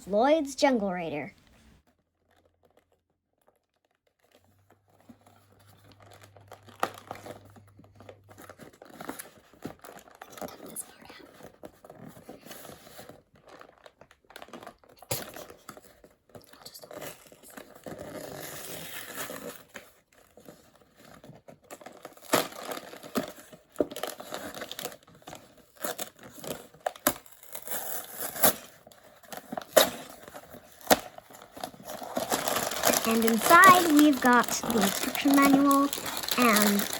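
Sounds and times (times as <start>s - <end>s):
cardboard tearing: 17.6s - 36.9s
plastic bags crinkling: 20.4s - 36.9s.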